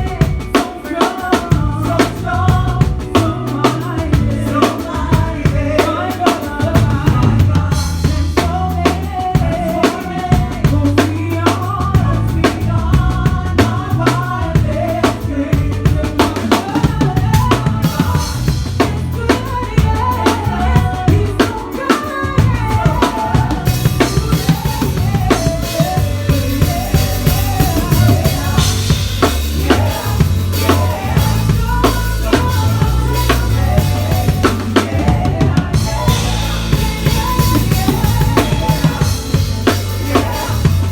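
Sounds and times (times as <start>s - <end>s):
bass line: 0.0s - 0.6s, 1.3s - 40.9s
drum kit groove: 0.0s - 40.9s.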